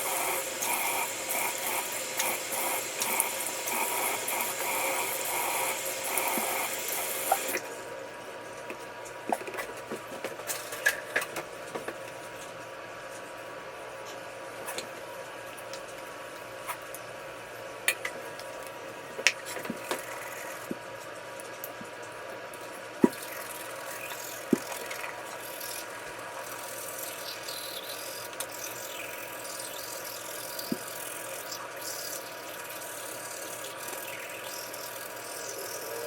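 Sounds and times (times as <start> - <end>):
tap water running into sink: 0.0 - 7.7, 23.0 - 36.0.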